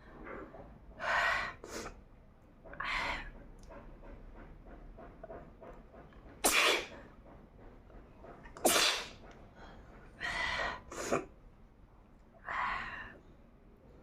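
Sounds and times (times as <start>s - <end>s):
woman sneezing: 6.5s - 6.9s, 8.7s - 9.1s.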